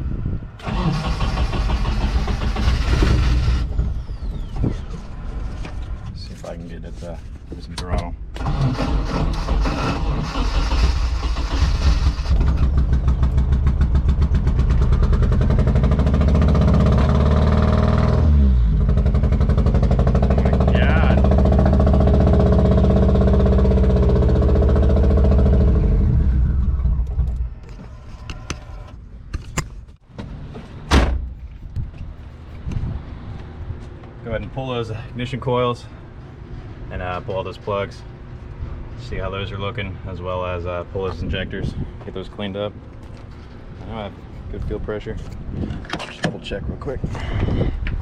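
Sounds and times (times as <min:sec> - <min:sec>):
car engine misfiring: 0:00.6 - 0:05.9, 0:08.3 - 0:28.9.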